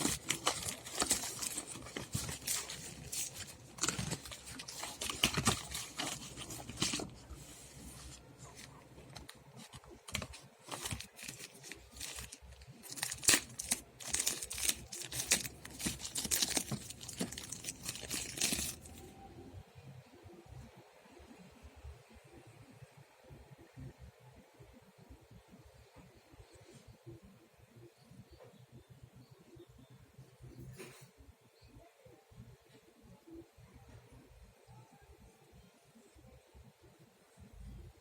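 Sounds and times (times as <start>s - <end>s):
packaging crinkling and tearing: 0.0s - 19.1s.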